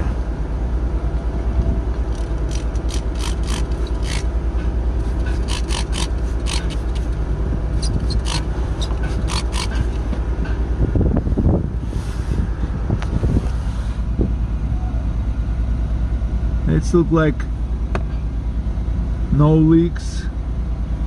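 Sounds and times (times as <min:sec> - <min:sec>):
truck diesel engine idling: 0:00.0 - 0:21.0
short scraping rustles: 0:11.8 - 0:12.5.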